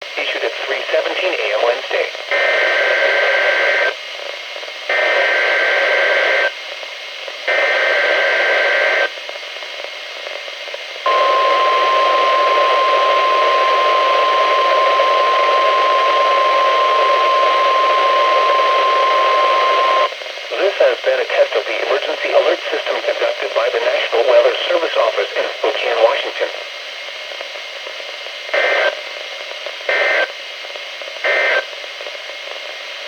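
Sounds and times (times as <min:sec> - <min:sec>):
heavy radio static: 0:00.1 - 0:04.0, 0:04.9 - 0:06.5, 0:07.5 - 0:09.1, 0:11.1 - 0:26.7, 0:28.6 - 0:29.0, 0:29.9 - 0:30.3, 0:31.3 - 0:31.6.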